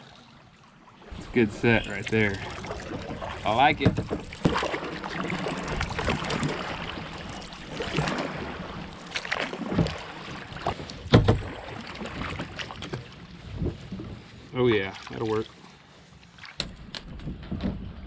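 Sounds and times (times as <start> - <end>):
paddle strokes splashing: 0.0 - 16.6
hollow knocks against hull: 2.1 - 7.2, 9.1 - 14.2.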